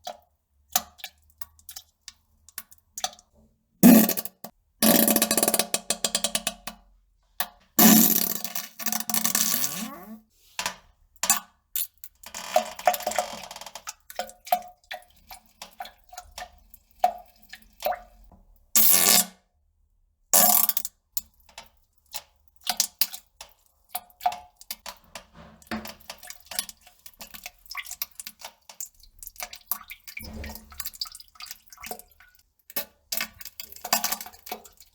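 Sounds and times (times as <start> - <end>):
water dripping and plopping: 0.0 - 8.5, 10.6 - 18.6, 20.4 - 34.9
water splashing: 29.5 - 32.2.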